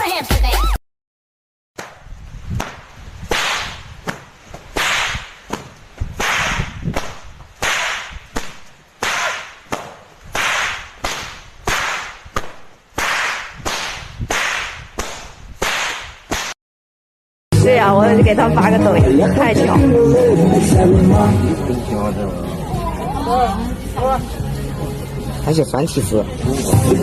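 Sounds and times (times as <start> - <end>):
music: 0.0 - 0.8, 17.5 - 27.0.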